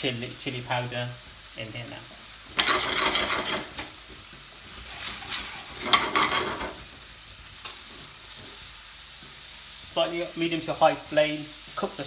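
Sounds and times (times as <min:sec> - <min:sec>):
oil sizzling: 0:00.0 - 0:12.0
spatula scraping pan: 0:02.2 - 0:06.9.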